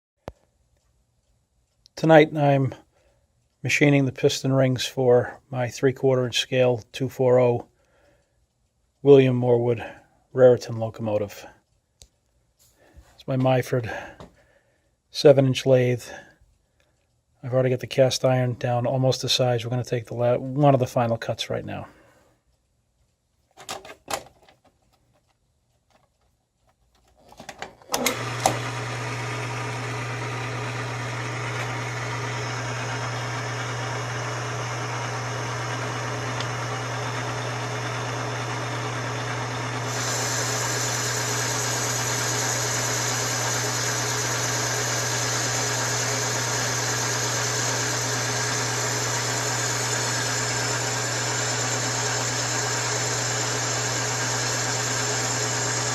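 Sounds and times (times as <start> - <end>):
clicks: 22.5 - 55.9
lathe running with steady hum: 27.9 - 55.9
tool bit cutting metal hiss: 39.8 - 55.9.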